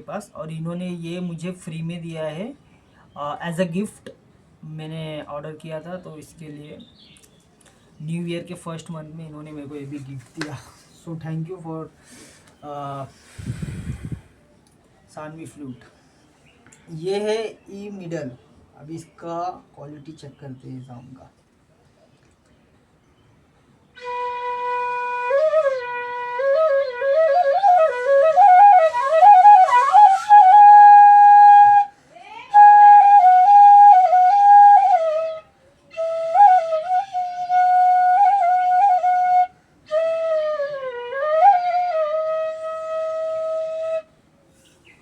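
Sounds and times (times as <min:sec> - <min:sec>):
bamboo flute melody: 0:23.9 - 0:31.9, 0:32.5 - 0:44.1.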